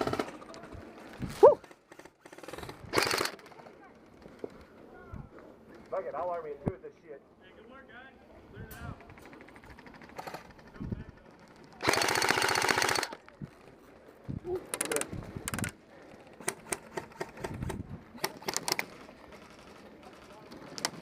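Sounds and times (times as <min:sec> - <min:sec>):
airsoft rifle firing: 0:01.6 - 0:03.5, 0:11.8 - 0:13.2.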